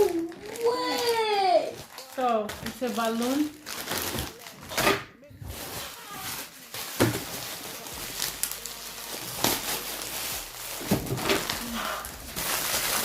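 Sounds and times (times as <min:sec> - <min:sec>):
packaging crinkling: 0:00.0 - 0:04.8, 0:05.4 - 0:13.0.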